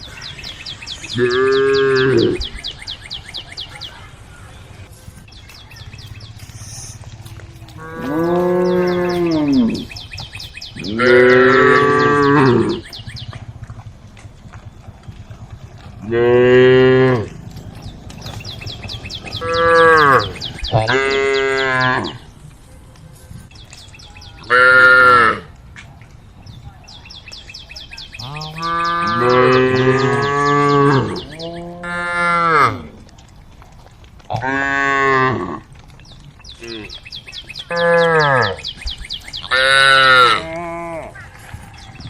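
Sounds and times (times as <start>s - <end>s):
bird chirping: 0.0s - 13.9s, 17.2s - 31.8s, 35.9s - 40.4s
cattle mooing: 1.2s - 2.5s, 7.4s - 10.0s, 10.8s - 13.0s, 15.9s - 22.2s, 28.2s - 33.1s, 34.3s - 35.7s, 37.7s - 38.6s, 39.4s - 41.4s.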